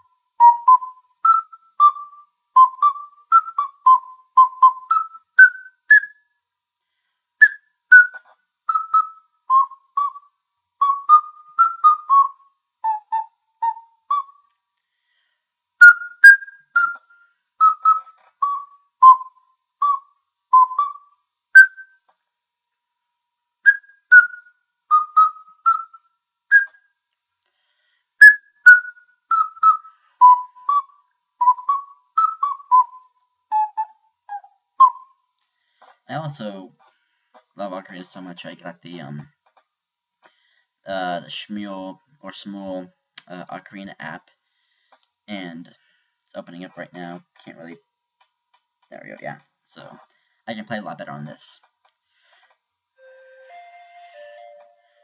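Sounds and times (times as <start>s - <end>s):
ocarina melody: 0.0s - 6.2s, 7.4s - 14.5s, 15.8s - 22.0s, 23.7s - 26.8s, 28.2s - 35.1s, 53.0s - 55.0s.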